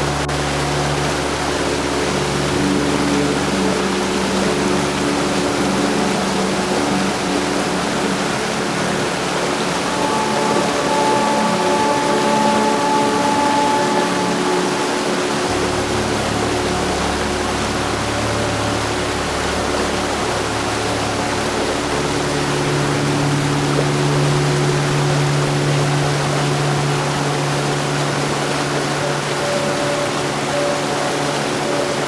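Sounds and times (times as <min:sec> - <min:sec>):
heavy rain hiss: 0:00.0 - 0:32.0
low humming tones: 0:00.0 - 0:32.0.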